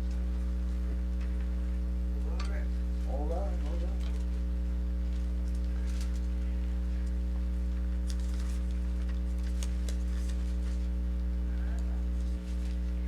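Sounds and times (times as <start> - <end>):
electrical mains hum: 0.0 - 13.0.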